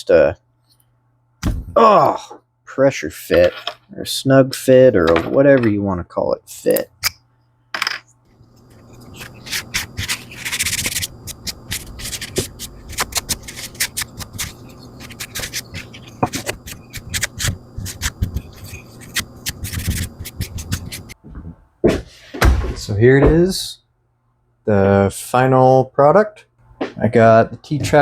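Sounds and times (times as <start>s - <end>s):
steady low hum: 6.4s - 25.2s
scraping rubs: 8.4s - 22.3s.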